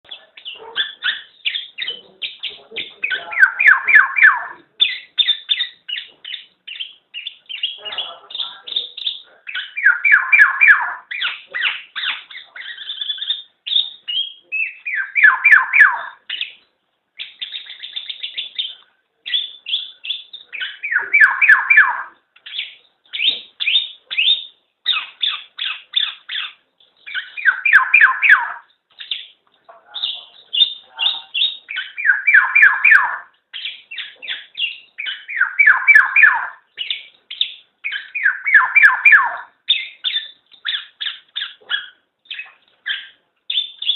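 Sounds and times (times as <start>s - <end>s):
oriole calling: 0.1s - 6.1s, 7.6s - 16.3s, 20.4s - 22.2s, 27.1s - 28.7s, 30.6s - 37.0s, 37.8s - 43.0s.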